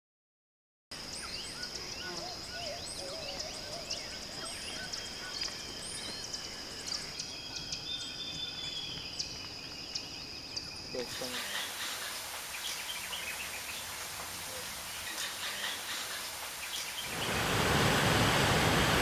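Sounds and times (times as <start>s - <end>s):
high insect drone: 1.0s - 15.1s.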